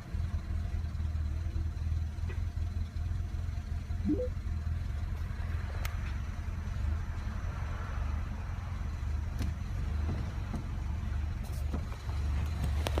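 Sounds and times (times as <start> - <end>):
car engine idling roughly: 0.0 - 13.0.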